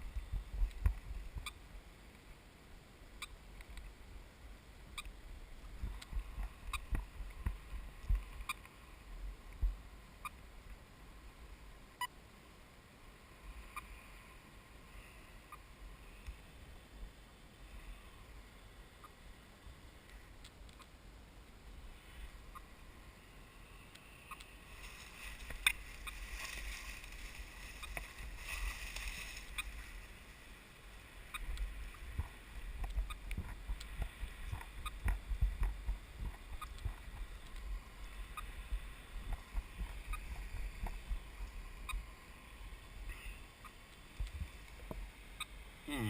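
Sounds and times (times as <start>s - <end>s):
footsteps rustling through undergrowth: 24.7s - 30.9s.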